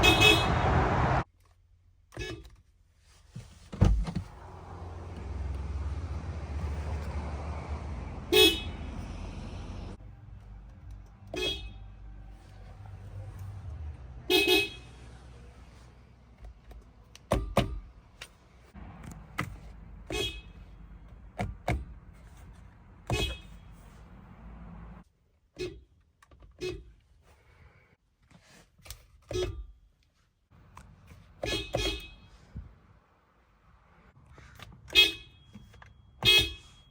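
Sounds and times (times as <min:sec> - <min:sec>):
car horn honking: 0:00.0 - 0:01.2, 0:07.2 - 0:10.0, 0:11.2 - 0:12.1, 0:14.1 - 0:15.2, 0:20.0 - 0:20.8, 0:23.0 - 0:23.9, 0:34.9 - 0:36.9.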